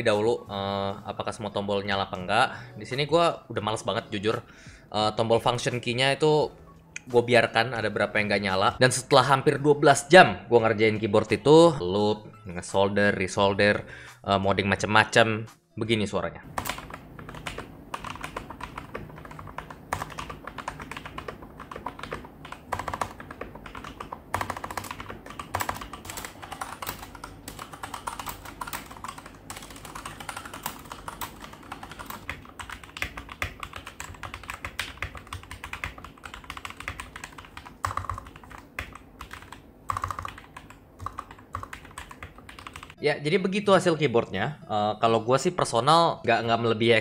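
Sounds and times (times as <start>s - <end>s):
mechanical keyboard typing: 16.5s - 43.0s.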